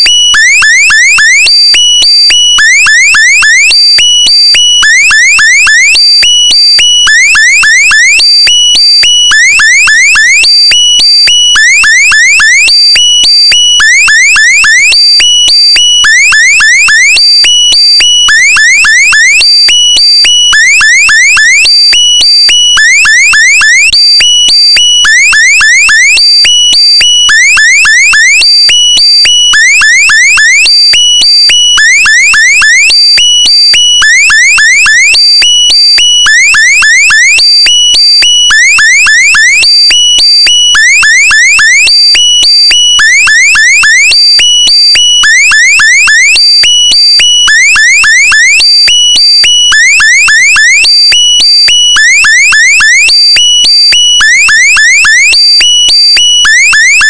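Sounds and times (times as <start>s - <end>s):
electronic alarm with sweeping tones: 0.0s - 57.0s.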